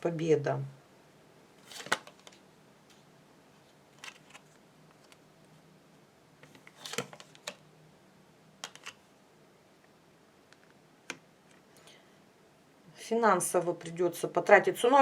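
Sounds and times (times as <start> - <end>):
cards clicking and rustling: 1.6 - 2.4, 4.0 - 5.2, 6.4 - 7.6, 8.6 - 9.0.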